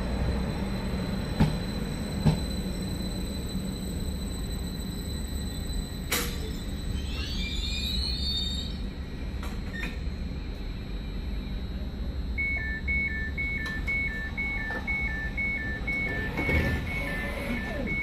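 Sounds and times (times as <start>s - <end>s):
train rumble: 0.0s - 18.0s
high squeal: 0.4s - 9.0s
two-tone door warning beeps: 12.3s - 18.0s.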